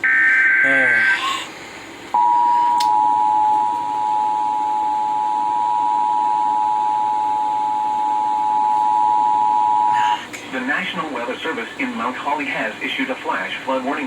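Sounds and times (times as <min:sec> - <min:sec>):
two-tone alert signal drone: 0:00.0 - 0:01.0, 0:02.2 - 0:10.0.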